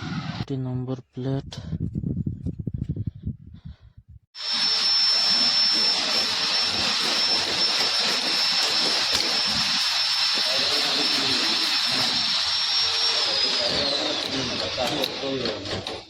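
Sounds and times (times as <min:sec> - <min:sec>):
machine rushing hiss and whine: 0:04.4 - 0:16.0.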